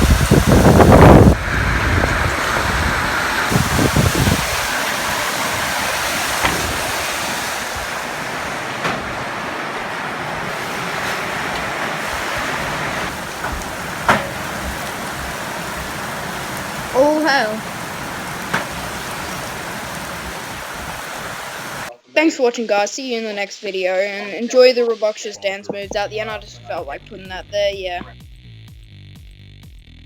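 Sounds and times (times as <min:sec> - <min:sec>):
hailstones ticking: 0:00.0 - 0:21.9
rain and hail pelting: 0:00.0 - 0:21.9
wind buffeting microphone: 0:00.0 - 0:21.9.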